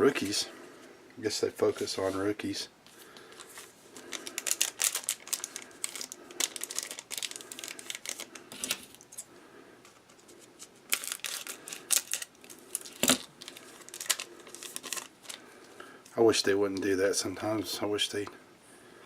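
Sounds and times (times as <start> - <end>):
foil wrappers crinkling: 3.3 - 9.3, 10.2 - 15.6.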